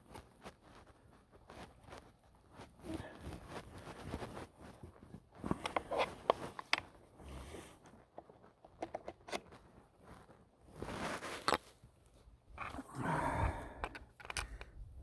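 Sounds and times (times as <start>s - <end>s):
plastic clicks and taps: 5.5s - 6.9s, 8.6s - 9.4s, 13.8s - 14.7s.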